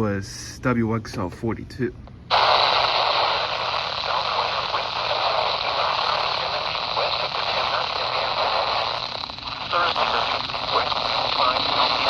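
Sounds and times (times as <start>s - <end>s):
radio static hiss: 2.3s - 12.0s
faint broadcast voice: 2.4s - 12.0s.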